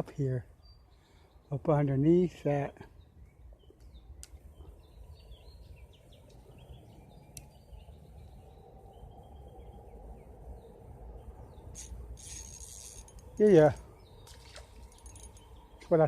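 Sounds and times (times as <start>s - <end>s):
low background noise: 0.0s - 16.0s
small birds chirping: 0.0s - 16.0s.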